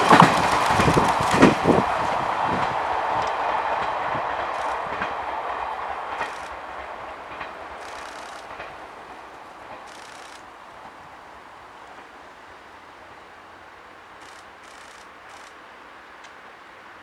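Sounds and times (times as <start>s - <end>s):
wheel clicks over rail joints: 0.0s - 11.2s, 14.2s - 15.6s
electric train rolling away: 0.0s - 15.9s.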